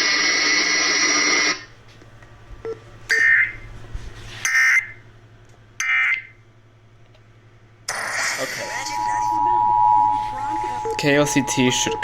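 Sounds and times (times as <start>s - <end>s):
raspy digital data bursts: 7.9s - 12.0s.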